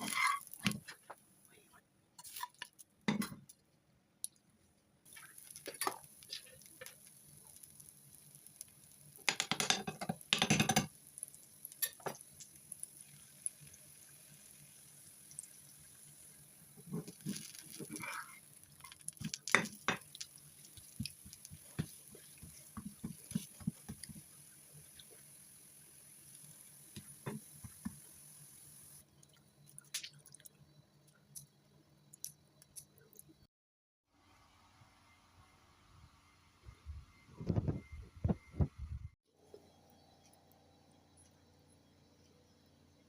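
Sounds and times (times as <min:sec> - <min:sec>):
utensils clicking and knocking: 0:09.2 - 0:10.9.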